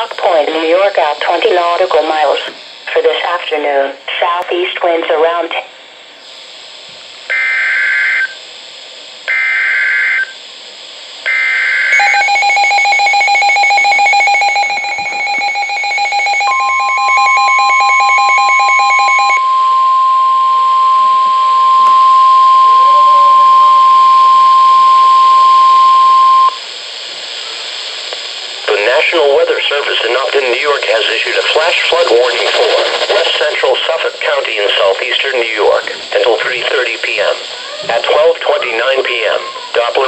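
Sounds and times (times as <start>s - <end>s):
steady high warning tone: 7.2s - 8.5s, 9.2s - 10.5s, 11.2s - 26.7s
fast pulsing alarm beeps: 11.3s - 26.6s.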